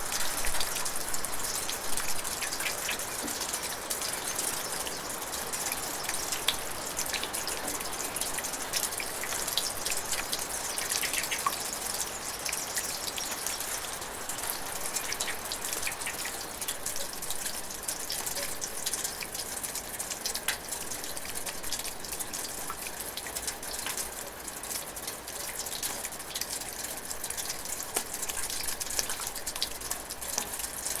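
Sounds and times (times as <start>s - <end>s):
running water hiss: 0.0s - 23.8s.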